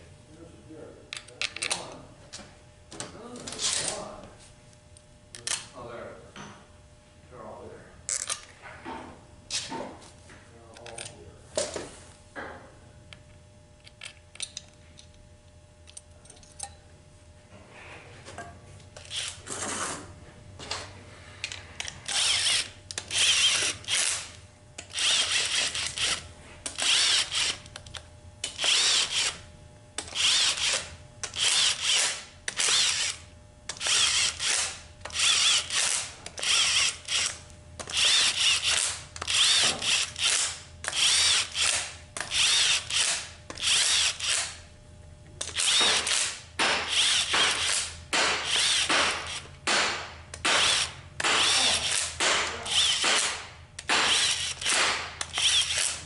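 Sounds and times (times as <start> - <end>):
power driver driving bolts: 45.4 - 56.0.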